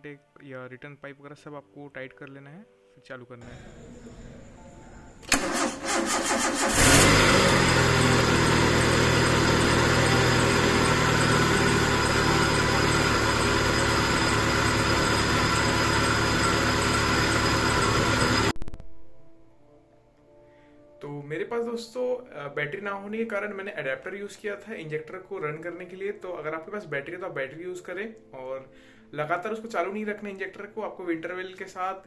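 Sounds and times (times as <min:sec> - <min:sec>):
car engine cranking and idling: 0:05.2 - 0:18.5.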